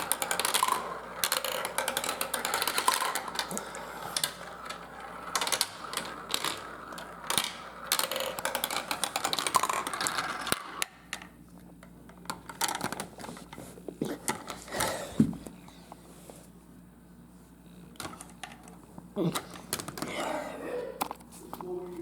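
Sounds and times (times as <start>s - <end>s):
marbles rolling and clattering: 0.0s - 11.3s, 12.3s - 13.3s.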